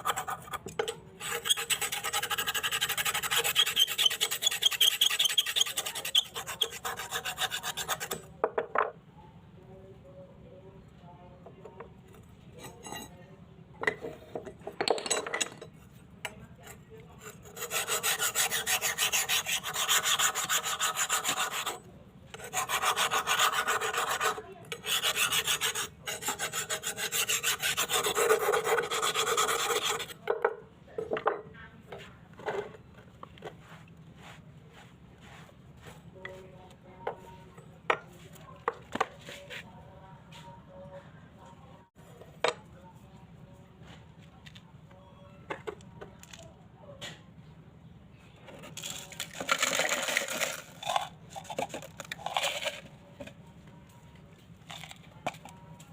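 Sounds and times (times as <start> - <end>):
abrasive scrubbing on knife blade: 1.2 - 8.3, 17.1 - 21.8, 22.4 - 30.2.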